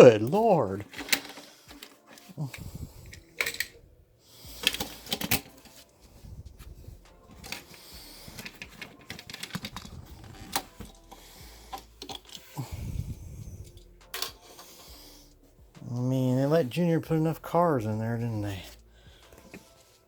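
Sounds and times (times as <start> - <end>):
toy cars clicking and clattering: 8.3 - 11.0.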